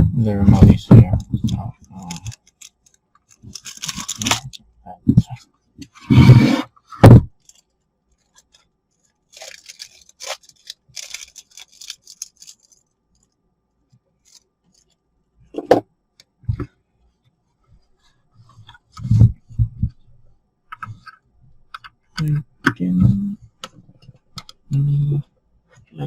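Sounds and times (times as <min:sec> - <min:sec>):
packaging rustling and scraping: 0:01.2 - 0:04.6, 0:05.9 - 0:13.3.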